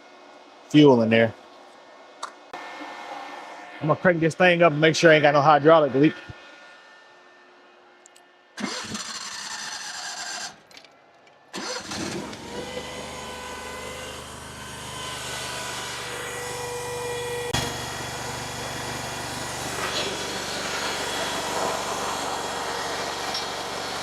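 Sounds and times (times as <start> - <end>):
engine starter cranking: 8.6 - 10.9, 11.5 - 14.4
engine running: 11.5 - 24.0.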